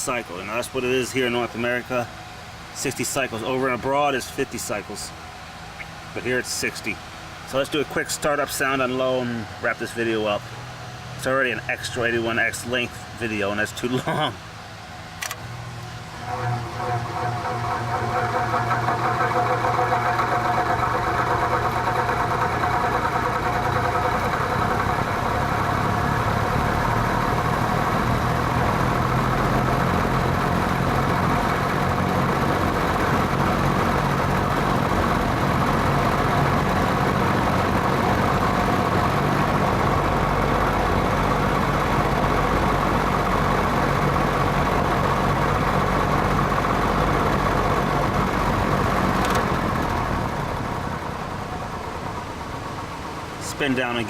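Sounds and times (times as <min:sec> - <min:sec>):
box fan motor rattling: 0:15.1 - 0:54.0.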